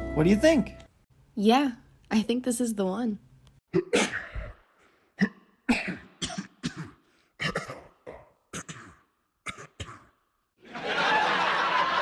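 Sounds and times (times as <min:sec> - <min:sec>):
person coughing: 0:03.8 - 0:04.6, 0:05.2 - 0:10.2.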